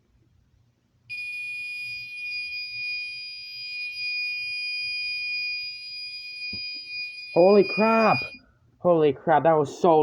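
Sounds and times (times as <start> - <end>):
fire alarm horn continuous tone: 1.1 - 8.5.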